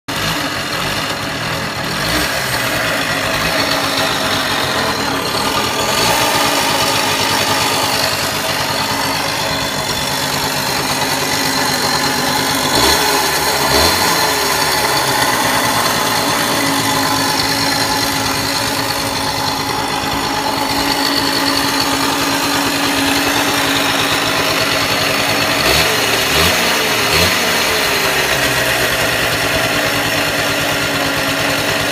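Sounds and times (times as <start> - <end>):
small engine idling: 0.0 - 31.9
tinny metallic rattle: 1.0 - 31.8.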